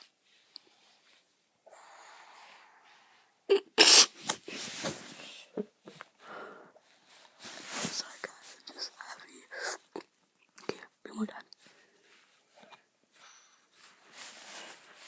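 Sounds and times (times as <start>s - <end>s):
person breathing: 1.6s - 3.5s, 6.2s - 7.2s
loud nasal burst: 3.5s - 4.2s.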